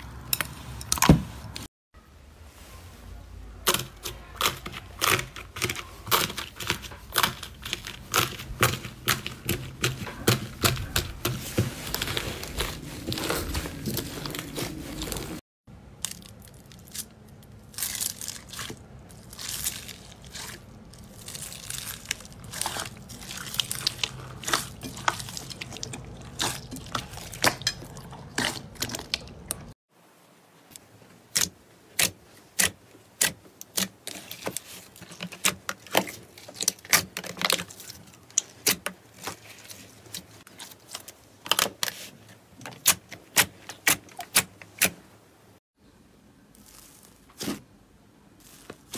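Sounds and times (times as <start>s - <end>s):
slime crackling and popping: 46.6s - 47.6s.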